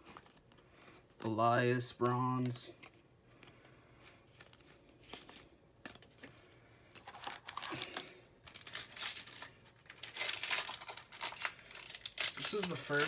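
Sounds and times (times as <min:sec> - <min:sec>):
cards ticking: 0:00.0 - 0:03.7, 0:10.3 - 0:13.0
plastic wrapper crinkling: 0:06.9 - 0:13.0.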